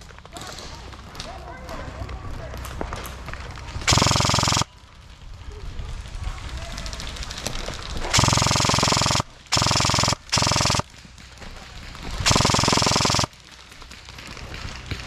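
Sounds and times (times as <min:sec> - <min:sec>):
airsoft gun firing full auto: 0:03.8 - 0:04.8, 0:08.0 - 0:11.0, 0:12.2 - 0:13.4.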